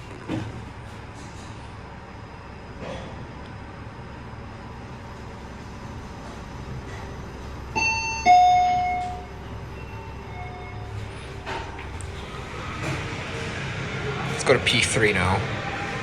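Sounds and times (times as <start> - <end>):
steady low hum: 11.3 - 14.6.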